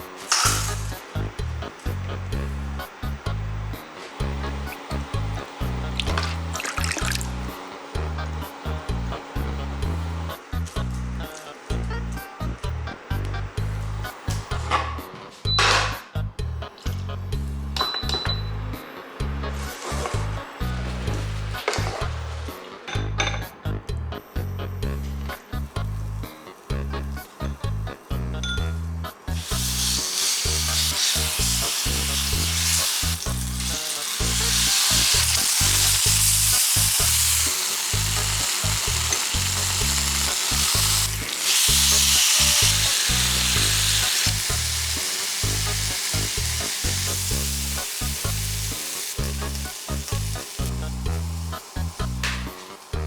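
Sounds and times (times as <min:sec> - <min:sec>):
food sizzling in a pan: 0:00.0 - 0:08.8, 0:25.5 - 0:53.0
background music with bass line: 0:00.0 - 0:53.0.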